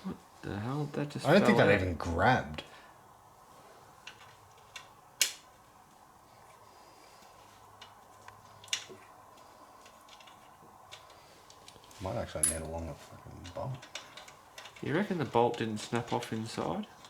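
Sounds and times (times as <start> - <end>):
faint steady hum: 0.0 - 17.0
hand tools clicking and tapping: 9.8 - 12.8, 13.4 - 17.0
bolt being worked: 13.4 - 14.9.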